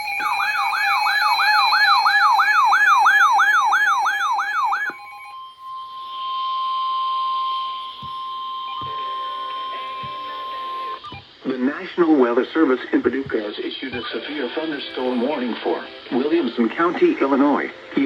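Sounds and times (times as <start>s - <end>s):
electronic yelp siren: 0.0s - 11.3s
steady high alarm tone: 0.0s - 11.4s.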